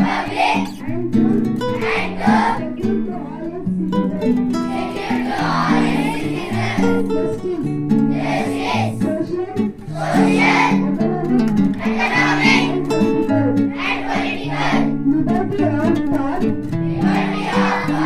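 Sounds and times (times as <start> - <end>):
person singing: 8.5 - 18.0.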